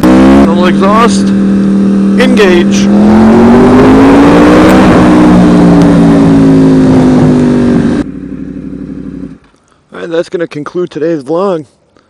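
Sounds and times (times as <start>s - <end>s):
motorcycle engine revving: 0.0s - 9.5s.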